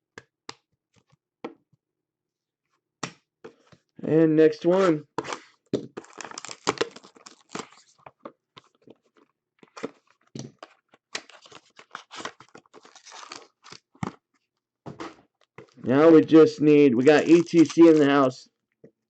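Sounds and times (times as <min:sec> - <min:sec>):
wrapper tearing and crinkling: 0:06.0 - 0:08.0, 0:11.2 - 0:14.2, 0:17.2 - 0:18.2.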